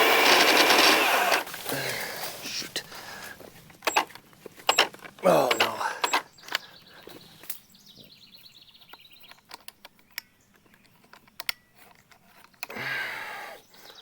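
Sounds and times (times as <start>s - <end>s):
pole saw clicks and knocks: 3.8s - 6.6s.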